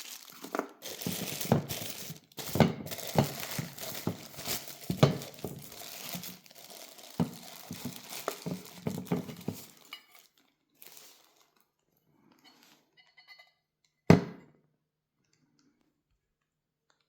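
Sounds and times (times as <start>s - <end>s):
packaging crinkling: 0.0s - 11.6s.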